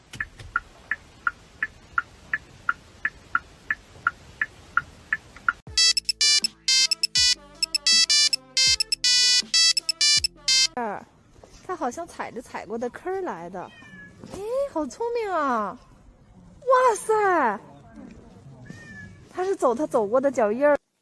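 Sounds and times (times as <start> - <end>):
electronic ringtone melody: 5.7 - 10.8.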